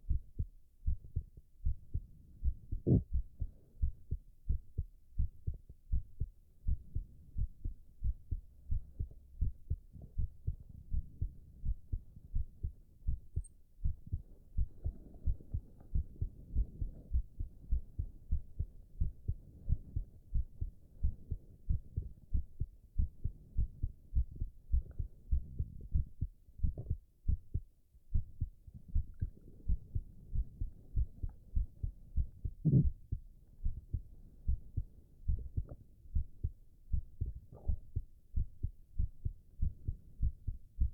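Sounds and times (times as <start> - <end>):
heartbeat thumps: 0.0 - 40.9
stomach rumbling: 2.4 - 3.5, 23.8 - 27.0, 28.8 - 33.9, 37.2 - 38.0.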